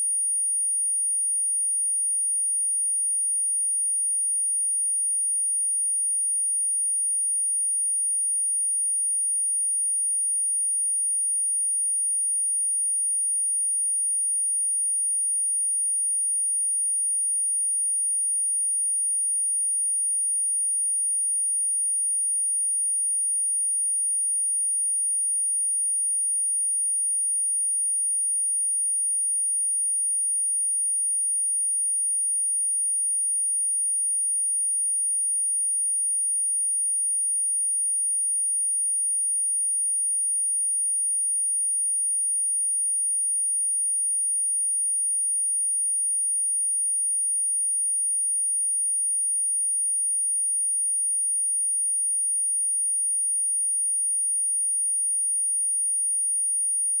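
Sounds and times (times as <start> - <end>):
high-pitched sine test tone: 50.0 - 57.0.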